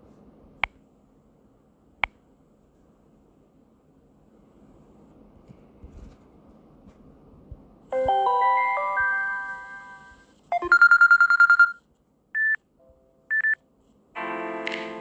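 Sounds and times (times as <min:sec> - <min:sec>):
rising chime melody: 0:08.0 - 0:10.2.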